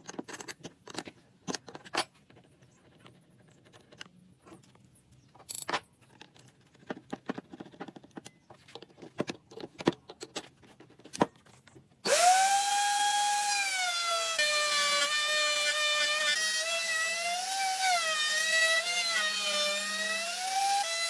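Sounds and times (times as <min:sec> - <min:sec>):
power tool whining: 0:12.0 - 0:21.0.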